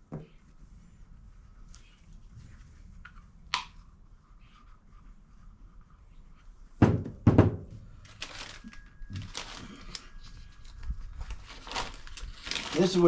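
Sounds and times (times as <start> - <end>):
handling and rustling of parts: 7.8 - 13.0.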